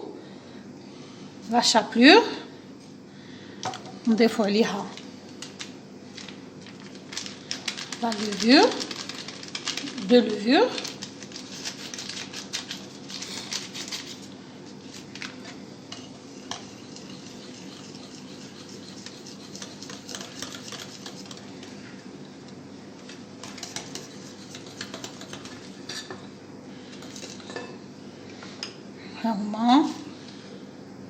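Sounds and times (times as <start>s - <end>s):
steady low hum: 0.0s - 31.0s
utensil stirring batter in bowl: 7.8s - 14.3s, 15.9s - 21.7s, 23.4s - 25.9s.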